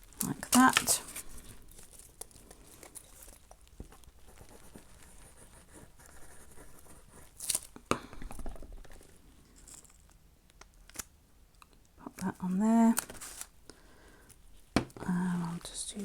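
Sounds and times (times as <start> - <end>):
paper rustling: 0.0 - 7.7, 12.8 - 13.5
paper crinkling: 0.0 - 7.8, 12.2 - 13.6.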